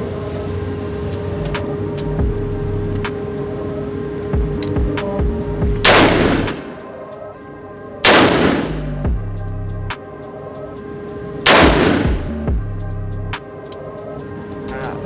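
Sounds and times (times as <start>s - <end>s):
gunshots with echo: 5.8s - 6.8s, 8.0s - 9.0s, 11.5s - 12.3s.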